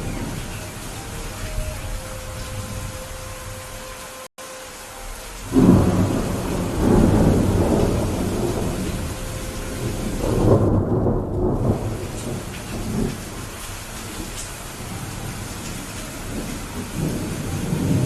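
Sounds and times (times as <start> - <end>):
thunder rumbling: 0.0 - 4.0, 5.0 - 18.0
steady rain: 0.0 - 18.0.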